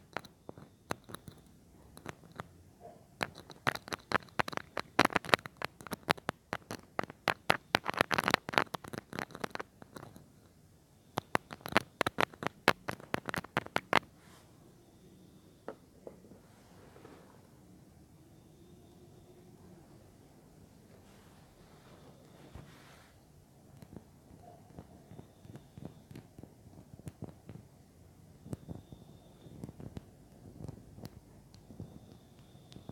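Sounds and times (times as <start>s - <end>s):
crisp clicks and crackles on microphone: 0.0s - 14.1s, 23.6s - 32.9s.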